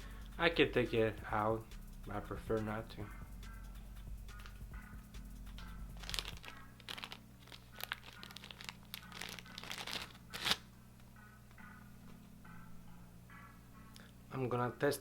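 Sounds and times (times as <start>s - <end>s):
packaging crinkling and rustling: 5.9s - 10.7s.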